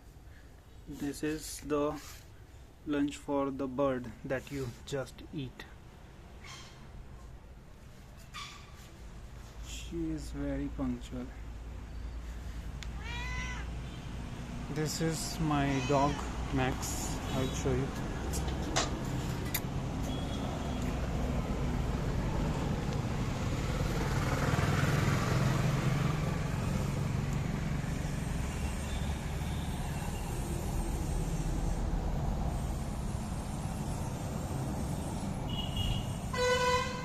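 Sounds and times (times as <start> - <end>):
road traffic rumble: 0.0 - 37.0
vehicle passing: 12.3 - 37.0.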